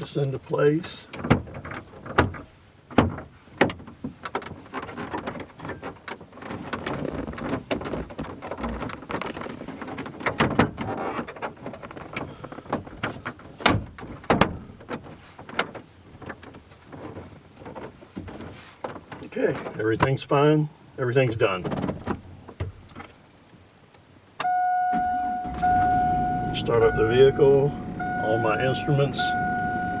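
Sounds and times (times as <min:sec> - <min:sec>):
plastic rubbing and scraping: 0:01.2 - 0:20.2.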